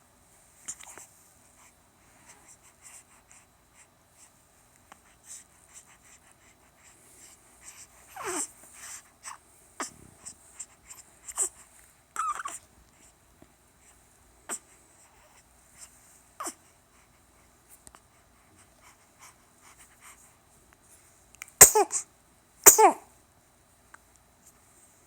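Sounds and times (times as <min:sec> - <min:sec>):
baby snuffly breathing: 0:21.6 - 0:22.0, 0:22.6 - 0:23.0.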